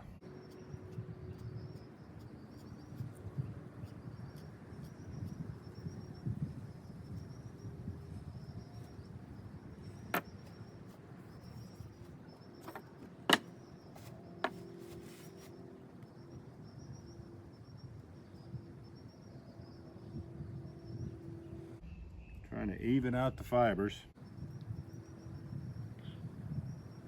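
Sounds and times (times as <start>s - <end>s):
pulsing insect chirps: 16.1s - 22.4s, 24.2s - 27.0s.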